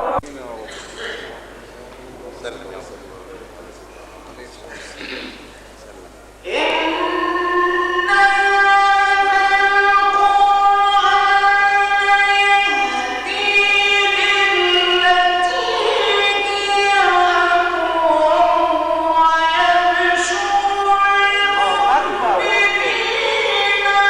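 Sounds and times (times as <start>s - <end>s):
man chanting melodically: 6.4s - 24.0s.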